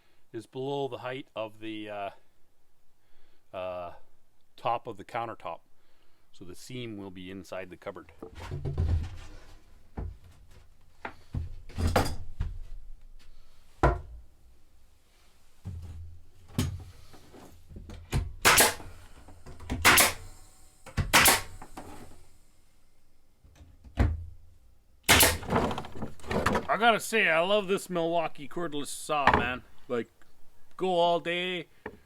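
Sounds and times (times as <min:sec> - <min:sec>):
building panels knocking and scraping: 0:08.2 - 0:12.6, 0:25.1 - 0:27.1.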